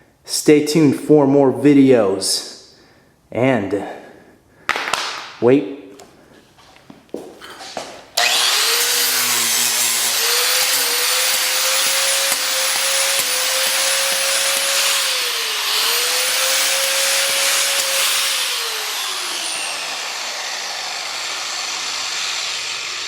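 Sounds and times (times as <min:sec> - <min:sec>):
angle grinder whining: 0:07.4 - 0:23.0.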